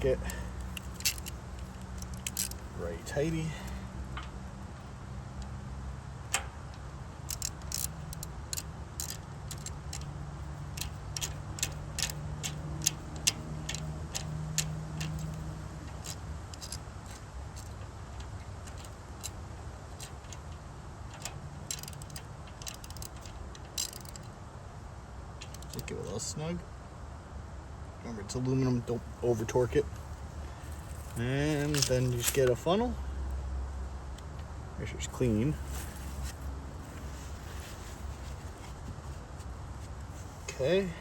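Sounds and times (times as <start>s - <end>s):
steady low hum: 0.0s - 41.0s
socket ratchet clicking: 0.1s - 3.4s, 6.3s - 24.4s, 25.4s - 25.9s.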